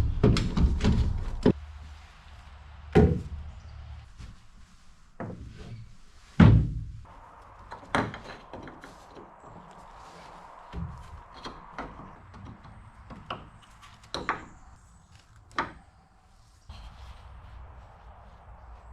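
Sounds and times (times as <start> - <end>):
wooden knocks and thuds: 0.0 - 1.6, 2.9 - 3.6, 5.2 - 5.8, 6.4 - 7.0.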